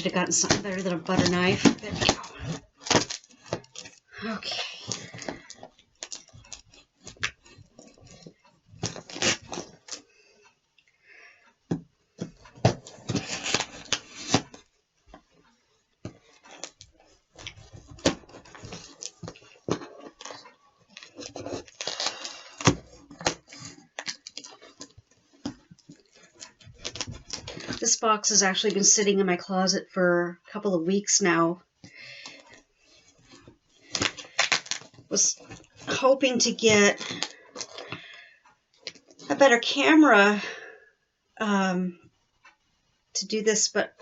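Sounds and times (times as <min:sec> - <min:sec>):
cardboard rustling and tearing: 0:00.0 - 0:10.0, 0:12.2 - 0:15.2, 0:16.1 - 0:27.8, 0:32.2 - 0:38.0.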